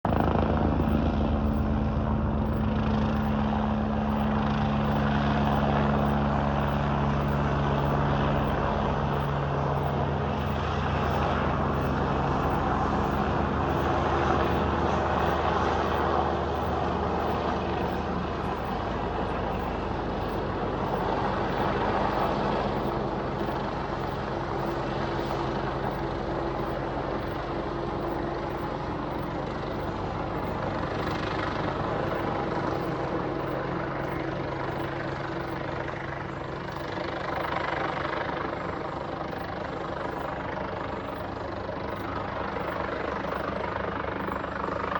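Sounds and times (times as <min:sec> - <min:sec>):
helicopter rotor and engine drone: 0:00.0 - 0:44.9.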